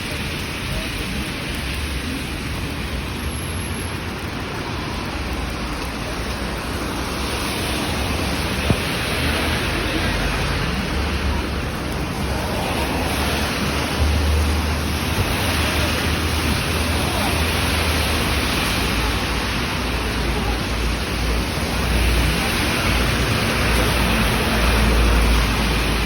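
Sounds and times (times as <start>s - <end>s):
steady rain falling: 0.0s - 26.0s.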